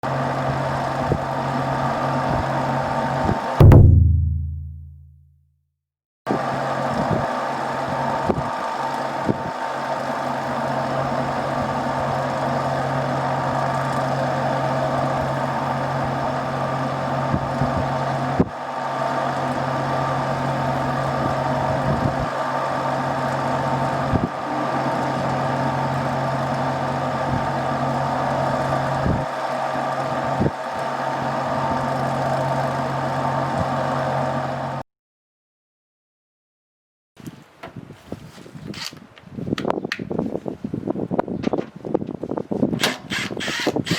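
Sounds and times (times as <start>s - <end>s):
fan motor grinding: 11.8s - 34.6s.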